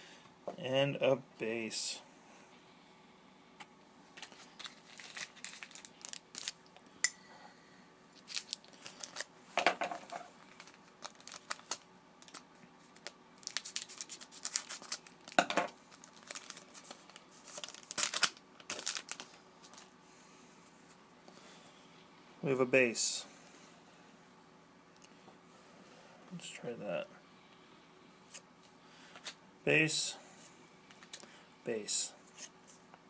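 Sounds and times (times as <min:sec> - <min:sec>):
wrapper tearing: 0:04.2 - 0:06.6, 0:08.2 - 0:09.3, 0:10.4 - 0:12.4, 0:13.0 - 0:19.8
wrapper crinkling: 0:04.2 - 0:06.7, 0:08.2 - 0:09.3, 0:10.0 - 0:19.9.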